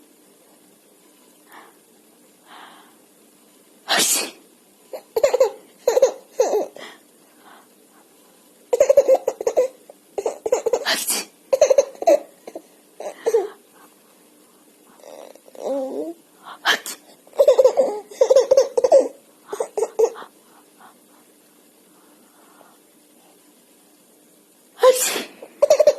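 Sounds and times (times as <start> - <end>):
adult sneezing: 3.9 - 4.4, 24.8 - 25.4
baby laughing: 5.0 - 6.8, 8.7 - 13.6, 17.3 - 20.3, 25.6 - 25.9.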